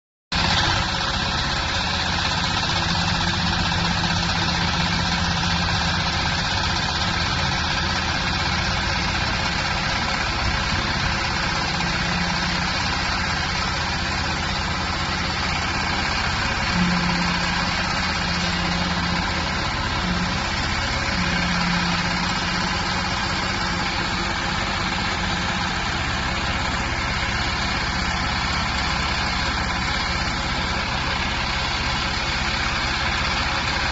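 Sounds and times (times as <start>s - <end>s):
baler machine drone: 0.3s - 33.9s
low hum: 0.6s - 33.9s.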